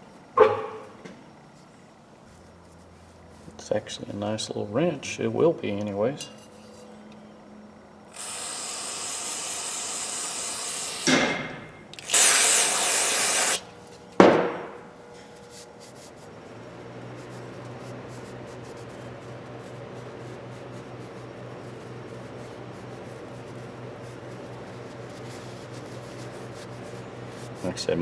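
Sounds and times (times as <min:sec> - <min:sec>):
hissing spray: 0:08.1 - 0:13.7.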